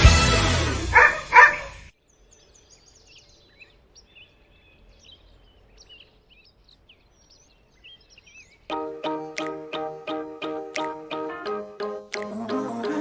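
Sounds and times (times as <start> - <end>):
music: 0.0 - 1.0, 8.7 - 13.0
dog barking: 0.9 - 1.8.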